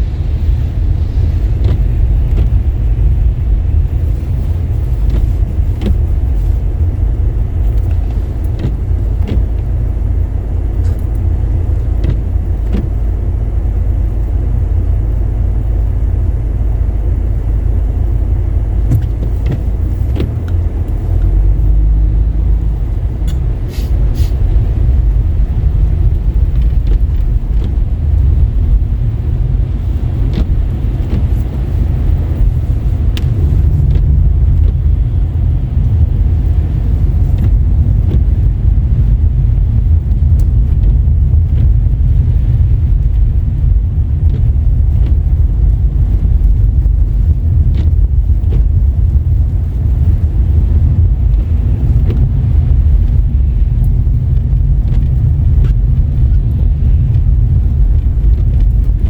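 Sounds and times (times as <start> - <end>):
car engine and road rumble: 0.0 - 59.0.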